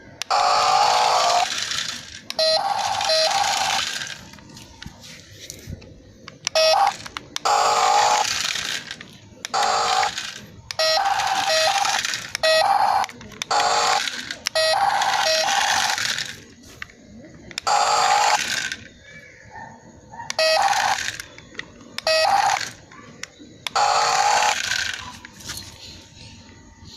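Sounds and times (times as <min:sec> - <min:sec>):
toy electronic sound effects: 0:00.1 - 0:26.9
beeping tones: 0:00.3 - 0:04.4, 0:06.4 - 0:08.3, 0:09.4 - 0:16.5.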